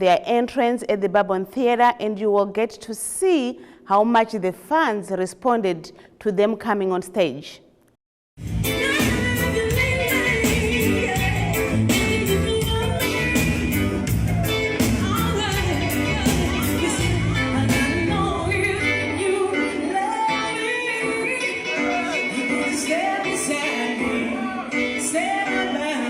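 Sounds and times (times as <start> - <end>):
bass line: 8.4 - 19.7
reggae music with singing: 8.4 - 26.0.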